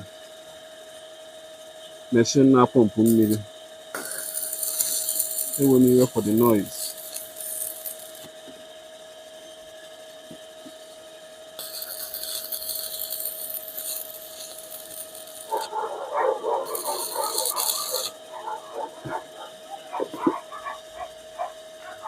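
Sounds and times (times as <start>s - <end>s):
hissing rush: 4.0s - 8.3s, 11.6s - 22.0s
water pump humming: 4.0s - 8.4s, 11.6s - 22.0s
dog barking rapidly: 15.5s - 22.0s.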